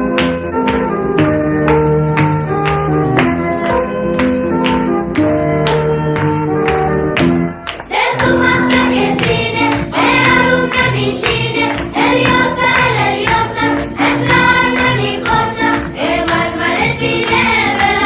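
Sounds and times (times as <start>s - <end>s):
instrumental music: 0.0s - 18.0s
group singing over a beat: 7.9s - 18.0s.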